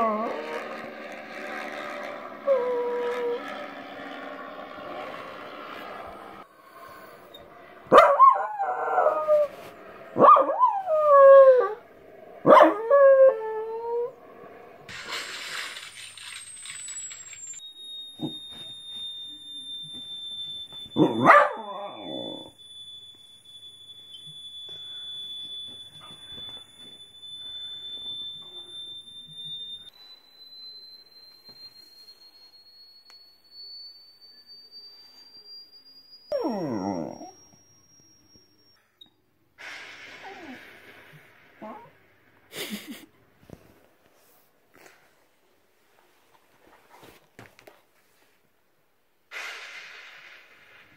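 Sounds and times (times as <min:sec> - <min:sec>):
dog howling: 0:00.0 - 0:06.4, 0:07.3 - 0:14.6, 0:21.0 - 0:22.5, 0:36.3 - 0:37.4
steady high-pitched tone: 0:13.0 - 0:42.9.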